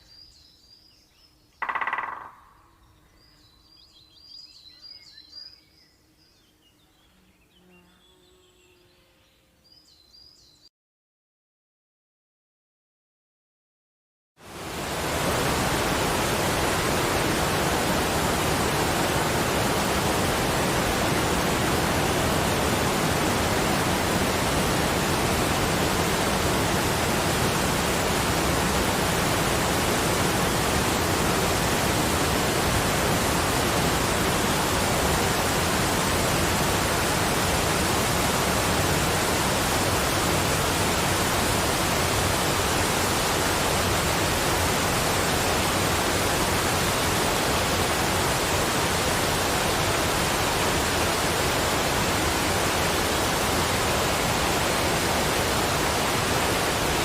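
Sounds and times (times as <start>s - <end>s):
falling water rushing: 14.4s - 57.0s.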